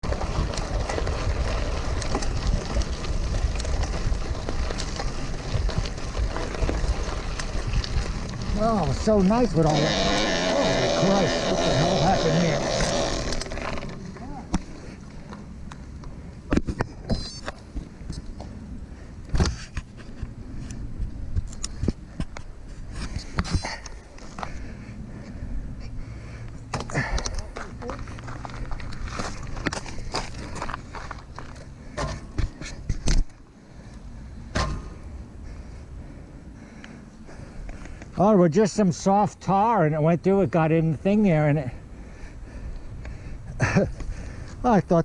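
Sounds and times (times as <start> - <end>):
wind rumble on microphone: 0.0 - 9.0
wheel crackling and ticking: 0.0 - 16.2, 26.1 - 31.8
bicycle rolling: 0.0 - 45.0.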